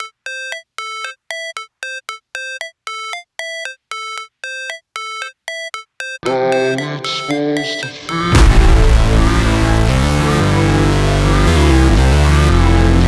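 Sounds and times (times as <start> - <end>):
electronic beat with bass: 0.0 - 13.0
short bright synthesizer notes: 7.8 - 13.0.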